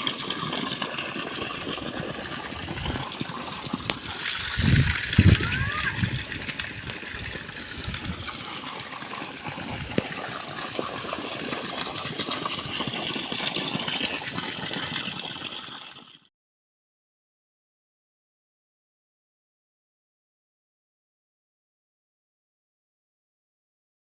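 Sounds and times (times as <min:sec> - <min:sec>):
water splashing: 0:00.0 - 0:16.1.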